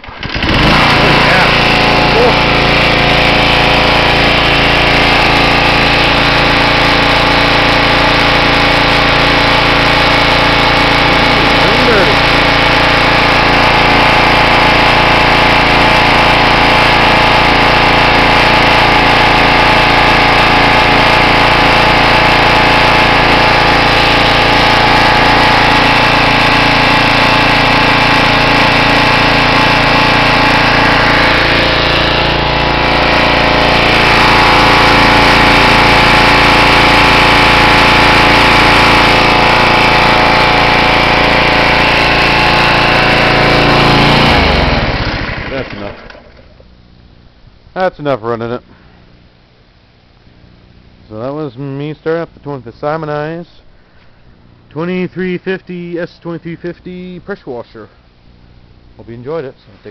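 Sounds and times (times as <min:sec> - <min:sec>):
pressure washer engine running: 0:00.0 - 0:46.8.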